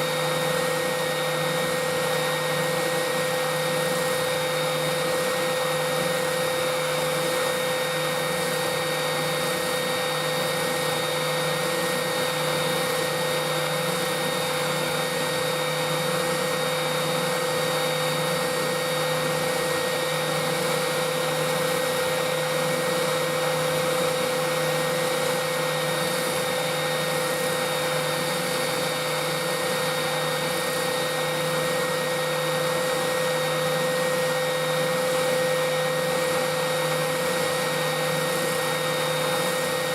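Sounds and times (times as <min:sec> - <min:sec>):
sander motor whine: 0:00.0 - 0:39.9.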